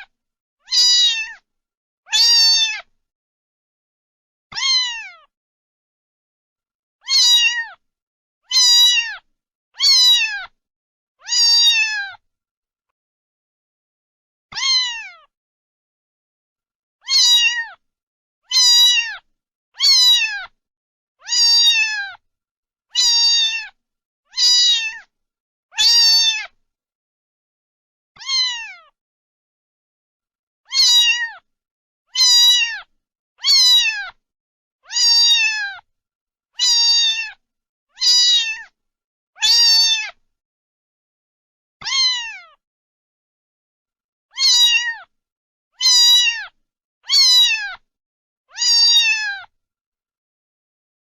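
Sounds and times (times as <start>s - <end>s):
cat meowing: 0.6s - 1.4s, 2.1s - 2.9s, 4.5s - 5.3s, 7.0s - 7.8s, 8.5s - 10.6s, 11.2s - 12.2s, 14.5s - 15.3s, 17.0s - 17.8s, 18.5s - 20.6s, 21.2s - 22.2s, 23.0s - 25.1s, 25.7s - 26.6s, 28.2s - 29.0s, 30.7s - 31.5s, 32.1s - 34.2s, 34.8s - 35.9s, 36.6s - 38.8s, 39.4s - 40.2s, 41.8s - 42.6s, 44.3s - 45.1s, 45.8s - 47.8s, 48.5s - 49.5s.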